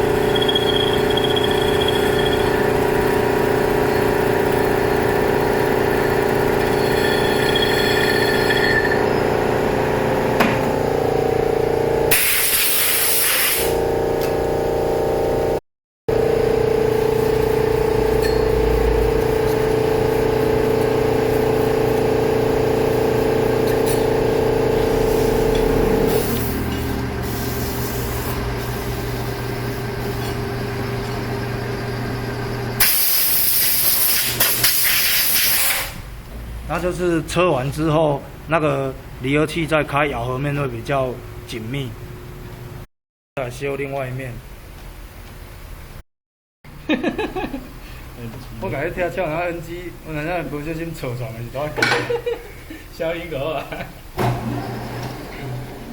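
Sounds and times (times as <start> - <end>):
metal lathe humming: 0.0 - 12.1, 28.4 - 32.8
air blasts hissing: 12.1 - 13.8, 24.8 - 30.4, 32.8 - 36.0.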